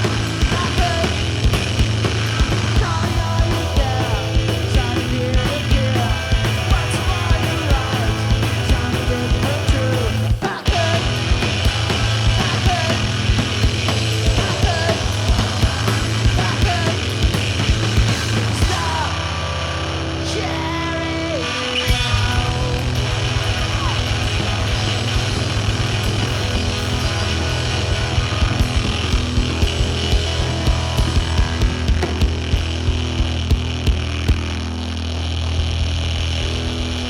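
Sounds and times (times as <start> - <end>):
drums fast beat: 0.0 - 19.2, 21.9 - 34.6
electric guitar bending notes: 21.5 - 37.0.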